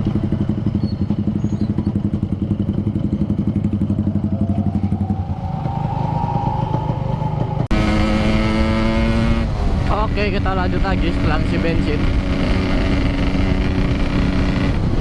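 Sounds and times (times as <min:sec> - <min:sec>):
motorcycle engine idling: 0:00.0 - 0:05.8.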